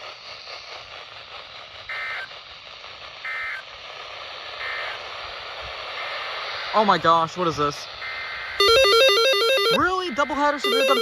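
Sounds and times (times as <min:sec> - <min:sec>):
radio hiss: 0:00.0 - 0:11.0
buzzy two-tone data chirps: 0:03.2 - 0:03.6, 0:04.6 - 0:05.0, 0:05.9 - 0:07.0, 0:08.0 - 0:11.0.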